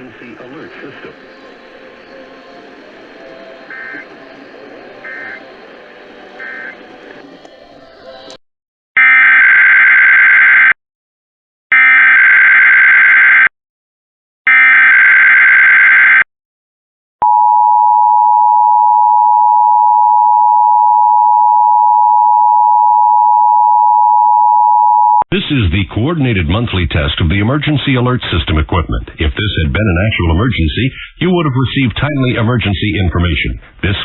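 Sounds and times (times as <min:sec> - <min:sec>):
harsh digital screeching bursts: 0:00.0 - 0:07.2.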